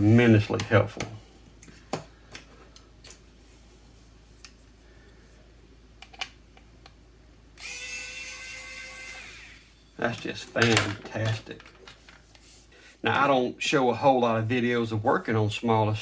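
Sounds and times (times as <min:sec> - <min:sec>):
electric screwdriver motor whining: 0:07.6 - 0:09.7.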